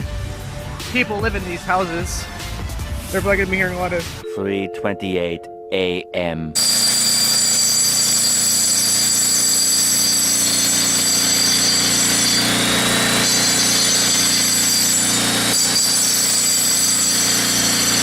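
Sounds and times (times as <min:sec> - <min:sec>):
power tool whining and rasping: 0:06.6 - 0:18.0.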